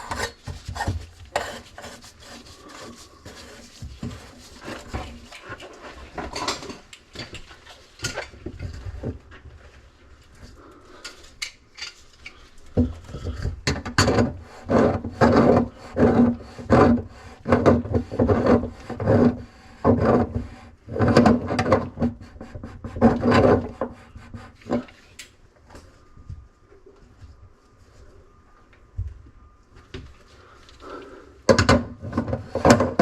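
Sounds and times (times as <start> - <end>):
hand tool rasping: 0.0 - 4.8.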